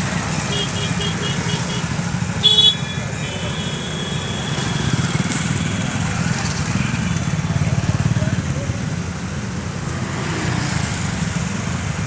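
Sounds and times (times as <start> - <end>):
car horn honk: 0.5 - 4.6.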